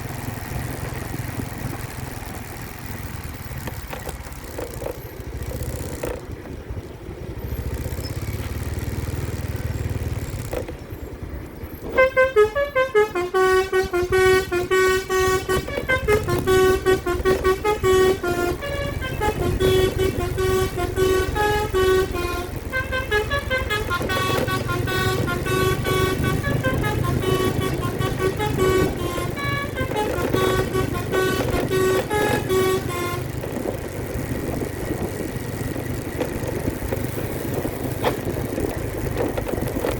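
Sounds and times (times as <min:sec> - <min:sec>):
low engine rumble: 0:00.0 - 0:39.9
musical bus horn toots: 0:11.8 - 0:33.8.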